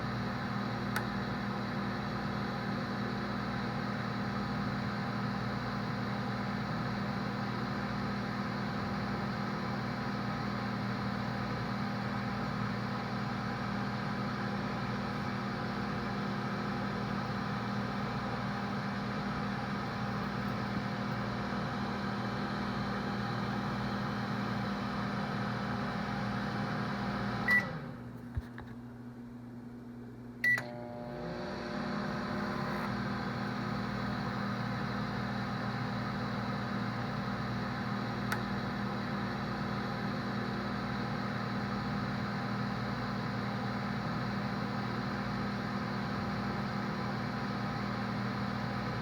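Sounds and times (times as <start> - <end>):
microwave oven humming: 0.0 - 49.0
microwave click: 0.8 - 1.4, 30.4 - 30.9, 38.2 - 38.7
microwave beeps: 27.4 - 27.9, 30.4 - 31.1.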